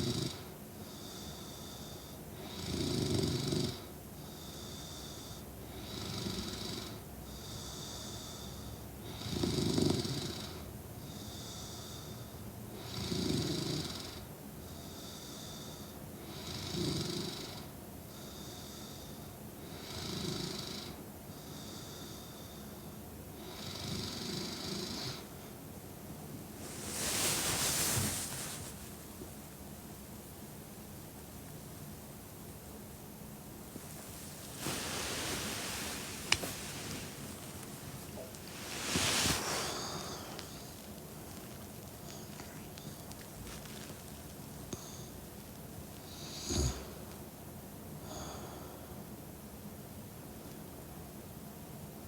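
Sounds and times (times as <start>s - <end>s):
woman snoring: 46.1s - 47.2s.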